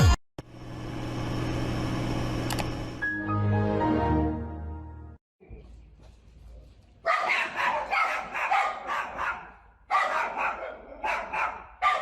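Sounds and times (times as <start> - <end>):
dog barking rapidly: 7.0 - 12.0.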